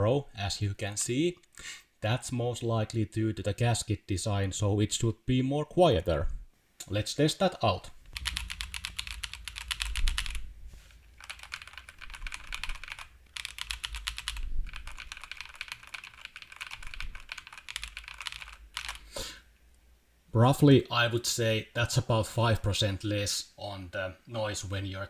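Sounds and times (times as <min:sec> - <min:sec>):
rapid mechanical keyboard typing: 0:08.1 - 0:19.1.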